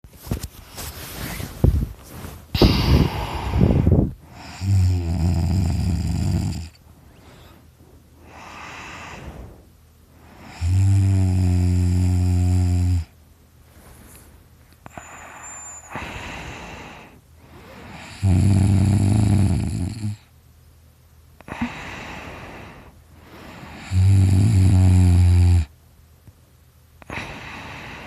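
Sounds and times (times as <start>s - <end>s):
person snoring: 2.6s - 6.8s, 8.2s - 13.1s, 14.9s - 20.3s, 23.5s - 25.7s.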